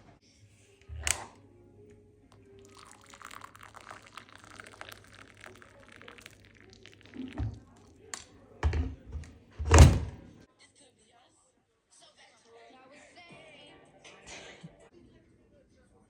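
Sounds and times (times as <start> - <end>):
liquid pouring into container: 2.4 - 8.3.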